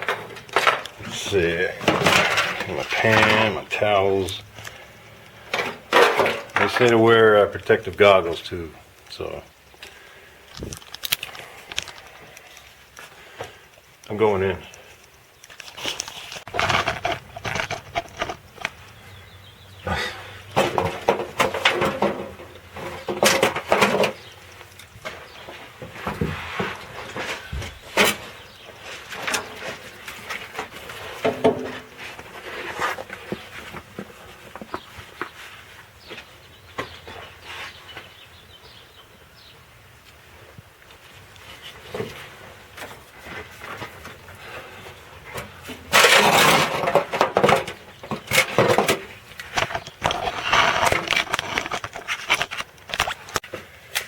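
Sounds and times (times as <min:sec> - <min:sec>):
hand tools knocking and scraping: 0:00.0 - 0:07.1, 0:15.0 - 0:18.9, 0:19.9 - 0:35.4, 0:41.8 - 0:53.7.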